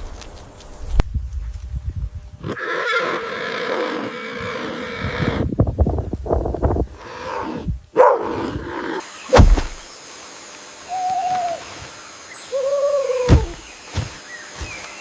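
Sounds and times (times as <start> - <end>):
sharp thump: 9.3 - 9.8
owl hooting: 10.8 - 13.7.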